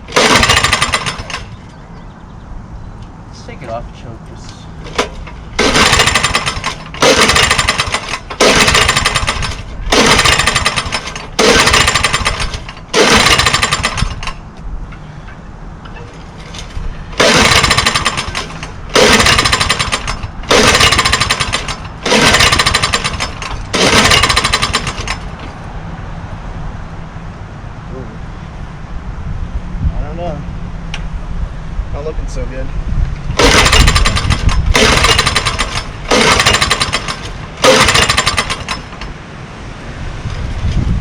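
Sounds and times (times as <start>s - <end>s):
recoil starter pulls: 0.0s - 1.6s, 4.8s - 14.4s, 15.8s - 25.5s, 33.3s - 39.2s
lawnmower engine cranking: 0.0s - 1.8s, 4.8s - 14.4s, 15.8s - 25.6s, 33.3s - 39.2s.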